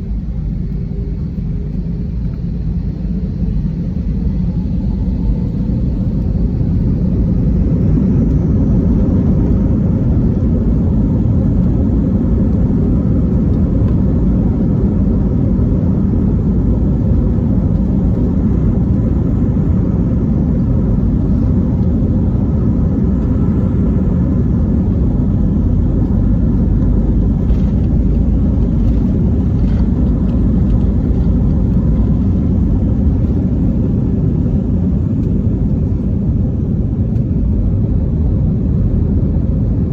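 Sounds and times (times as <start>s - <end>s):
jet engines rumbling: 0.0s - 39.9s.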